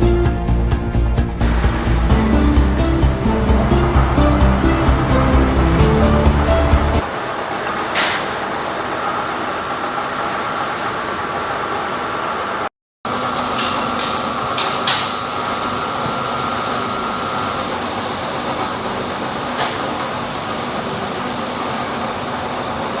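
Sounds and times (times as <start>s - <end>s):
lathe running: 0.5s - 7.0s
faint high whine: 15.2s - 18.9s.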